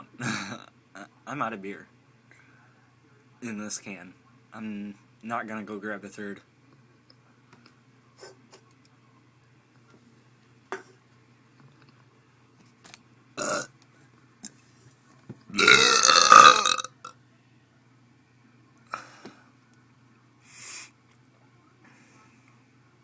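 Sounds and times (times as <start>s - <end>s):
loud belch: 13.4s - 13.7s, 15.6s - 17.0s.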